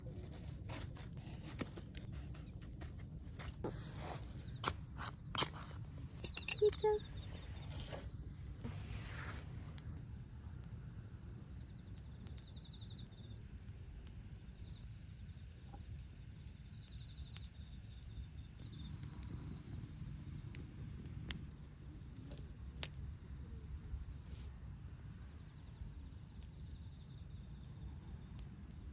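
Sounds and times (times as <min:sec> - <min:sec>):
insect trilling and chirping: 0:00.0 - 0:10.0.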